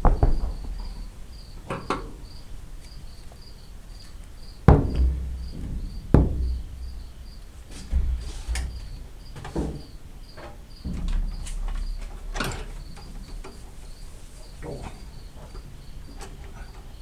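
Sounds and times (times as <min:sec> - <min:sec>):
sharp knocks on car: 0:00.0 - 0:03.0, 0:04.6 - 0:10.0
crickets chirping: 0:00.0 - 0:17.0.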